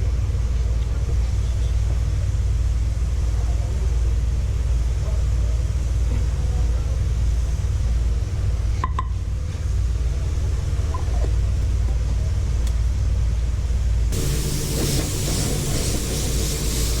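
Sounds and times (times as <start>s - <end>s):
low machine rumble: 10.1s - 17.0s
hiss: 14.2s - 17.0s.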